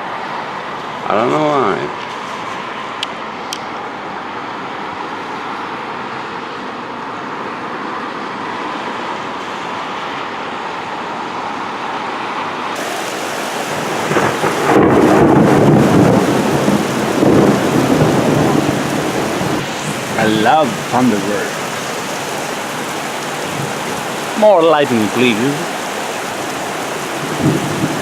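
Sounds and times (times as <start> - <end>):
steady rain: 0.0 - 28.0
thunder rumble: 12.8 - 21.7, 27.2 - 28.0.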